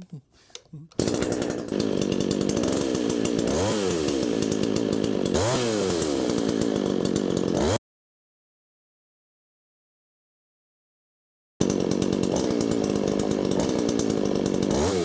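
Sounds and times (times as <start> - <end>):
chainsaw revving: 0.5 - 7.8, 11.6 - 15.0.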